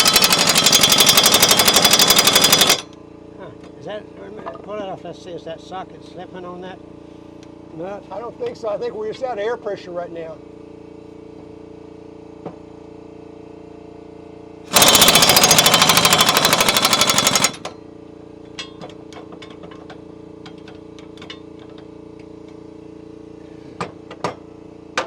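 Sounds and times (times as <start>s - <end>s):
pneumatic impact wrench hammering: 0.0s - 2.9s, 14.7s - 17.8s.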